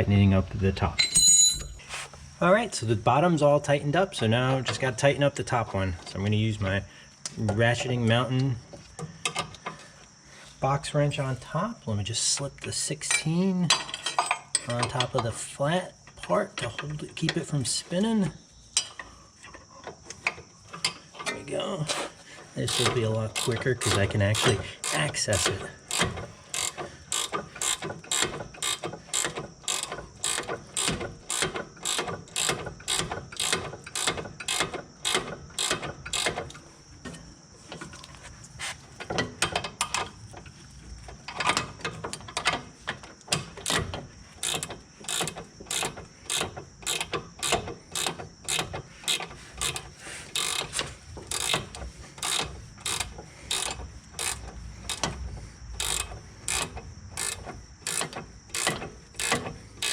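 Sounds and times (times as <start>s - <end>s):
ratcheting wrench clicking: 22.7s - 36.6s, 41.4s - 59.9s.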